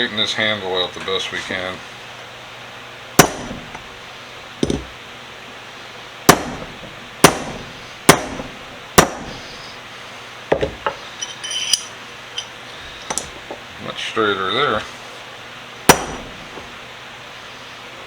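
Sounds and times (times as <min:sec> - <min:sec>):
light metallic clinks: 0:10.8 - 0:13.4.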